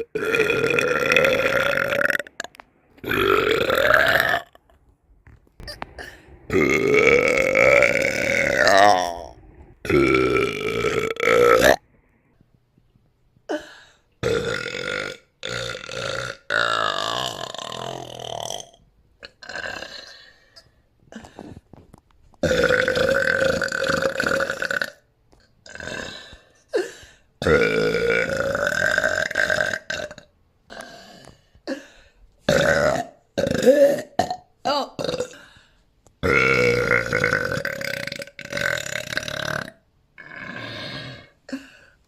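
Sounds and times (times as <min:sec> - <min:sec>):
woman burping: 0:00.0 - 0:04.6, 0:05.6 - 0:11.8, 0:14.2 - 0:21.6, 0:22.4 - 0:25.0, 0:32.5 - 0:35.4.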